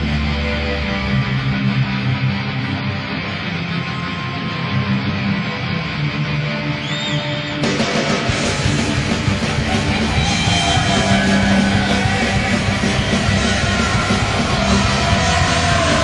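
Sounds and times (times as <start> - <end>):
rock song over arena speakers: 0.0 - 16.0
people yelling: 9.2 - 16.0.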